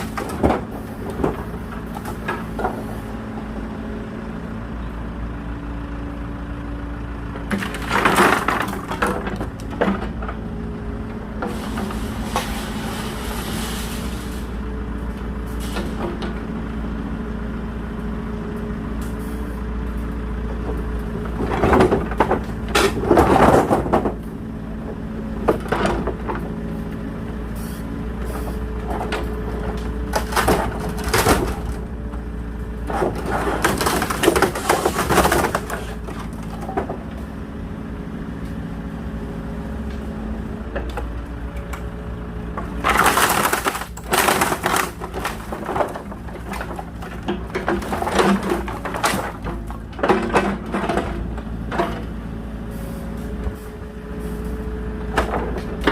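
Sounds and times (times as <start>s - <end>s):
excavator engine running: 0.0s - 55.9s
wooden pallets cracking: 7.5s - 10.4s, 21.2s - 24.2s, 28.8s - 32.0s, 32.8s - 37.1s, 42.5s - 52.1s.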